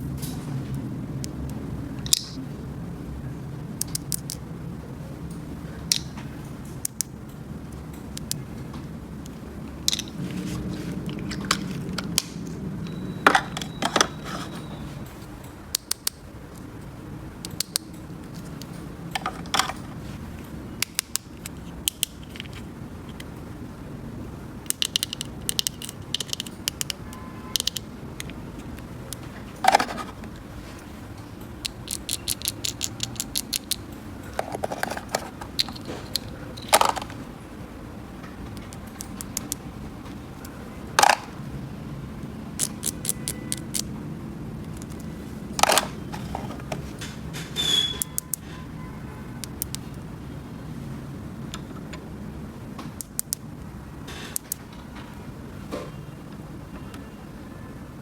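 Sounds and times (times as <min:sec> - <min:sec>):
plastic toy pieces clicking: 0:02.0 - 0:02.4, 0:03.8 - 0:04.4, 0:05.9 - 0:06.1, 0:15.7 - 0:16.2, 0:17.4 - 0:19.8, 0:20.8 - 0:23.3, 0:24.6 - 0:30.3, 0:31.5 - 0:37.2, 0:38.6 - 0:39.6, 0:42.6 - 0:43.9, 0:44.7 - 0:46.5, 0:49.4 - 0:49.9, 0:53.0 - 0:53.4, 0:54.3 - 0:54.6.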